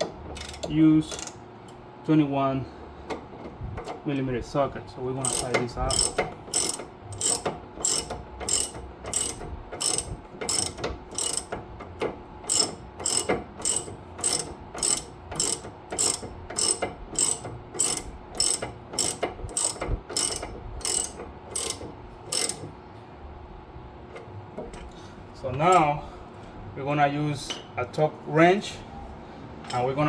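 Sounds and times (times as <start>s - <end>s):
ratchet wrench clicking: 0.4s - 1.4s, 5.2s - 11.6s, 12.5s - 22.7s.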